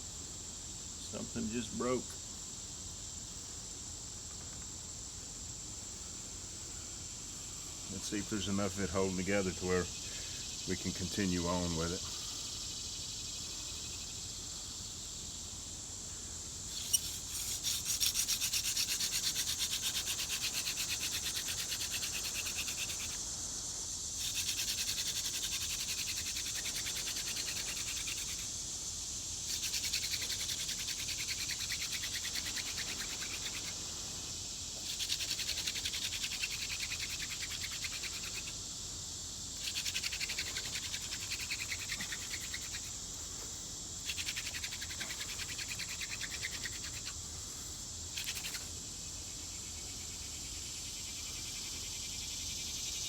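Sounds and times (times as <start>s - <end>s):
crickets chirring: 0.0s - 53.0s
hand drill friction hissing: 16.6s - 28.8s, 29.4s - 38.6s, 39.6s - 48.7s.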